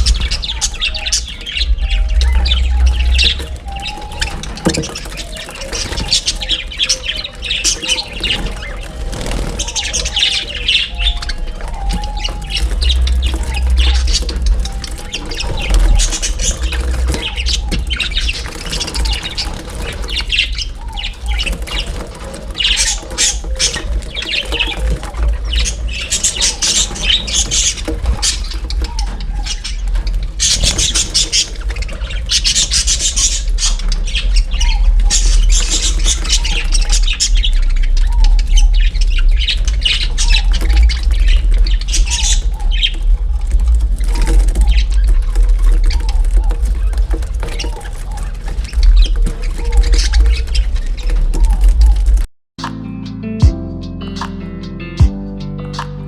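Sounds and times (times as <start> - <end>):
budgies chattering and squawking: 0.0 - 43.1.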